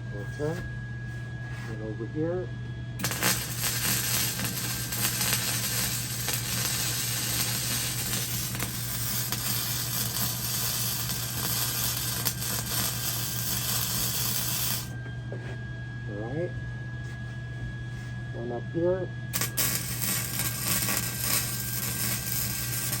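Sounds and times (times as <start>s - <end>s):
constant low hum: 0.0s - 23.0s
arc welding sizzle: 3.0s - 15.0s, 19.3s - 23.0s.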